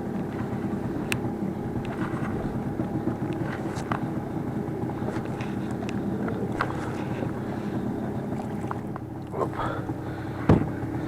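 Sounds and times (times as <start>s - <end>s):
boat motor running: 0.0s - 11.0s
faint clicks and knocks: 0.1s - 4.2s, 4.8s - 7.4s.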